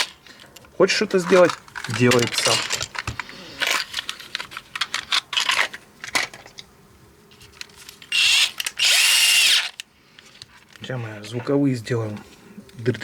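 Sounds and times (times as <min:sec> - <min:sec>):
plastic parts clicking: 0:00.0 - 0:06.7, 0:07.4 - 0:10.8
small electric drill whining: 0:08.1 - 0:09.8.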